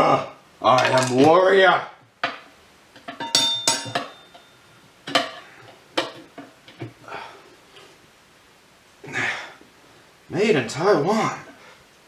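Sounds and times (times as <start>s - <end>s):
tire spoons clinking on wheel rim: 3.0s - 5.5s.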